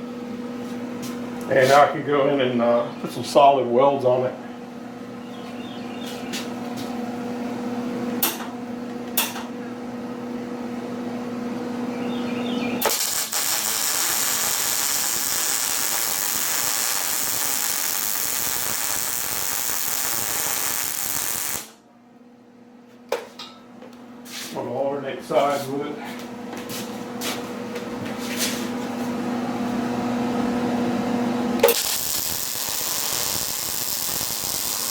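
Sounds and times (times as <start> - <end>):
welding arc hissing: 12.8 - 21.8, 31.6 - 34.9.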